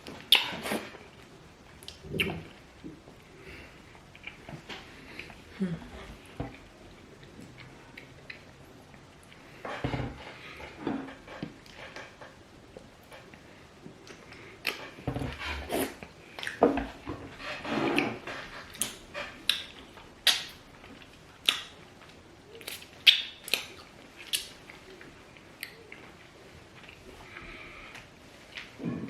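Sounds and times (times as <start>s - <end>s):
wet mouth smacks and chewing: 0.3s - 0.6s, 18.7s - 21.7s, 22.6s - 24.6s.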